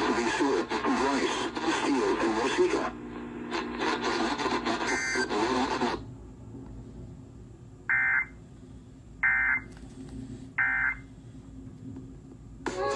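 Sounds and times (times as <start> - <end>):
noisy radio broadcast: 0.0 - 6.1.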